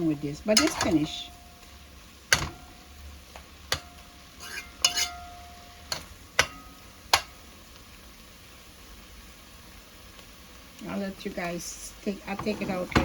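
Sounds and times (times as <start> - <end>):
spoon clinking against pot: 0.6 - 1.2, 3.7 - 7.3.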